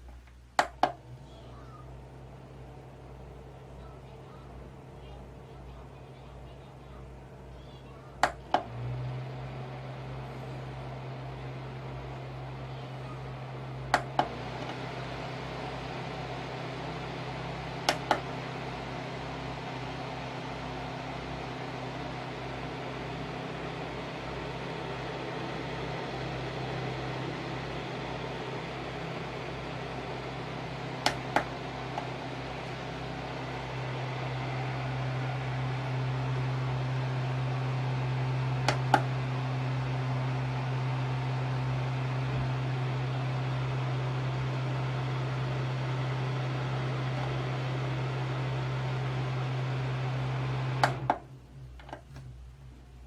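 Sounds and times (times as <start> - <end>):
fan motor hum and rushing air: 0.0 - 53.0
fan button clicks: 17.8 - 18.3, 31.0 - 32.2, 38.6 - 39.2.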